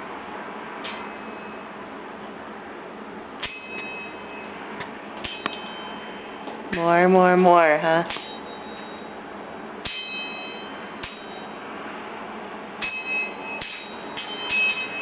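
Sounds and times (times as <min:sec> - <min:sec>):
steady low hiss: 0:00.0 - 0:15.0
sharp clinking knocks: 0:05.2 - 0:06.2, 0:12.8 - 0:15.0
brief high ringing: 0:05.2 - 0:06.4, 0:08.2 - 0:09.2, 0:09.8 - 0:11.6.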